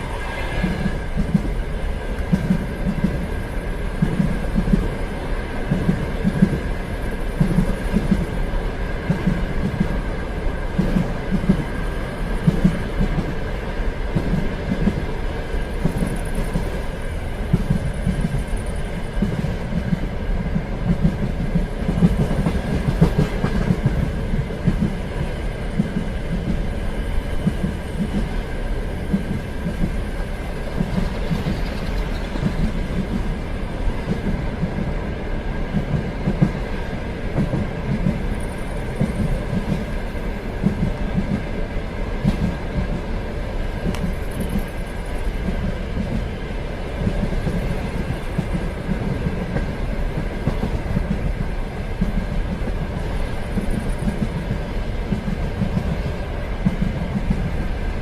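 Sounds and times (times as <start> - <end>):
train rumbling on track: 0.0 - 58.0.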